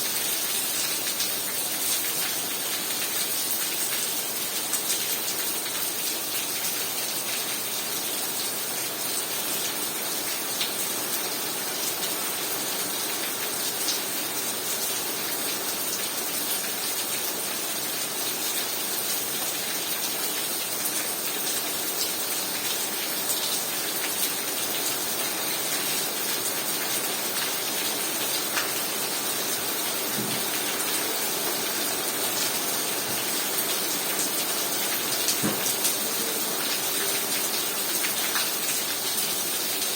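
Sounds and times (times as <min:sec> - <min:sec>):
heavy rain hissing: 0:27.9 - 0:39.7.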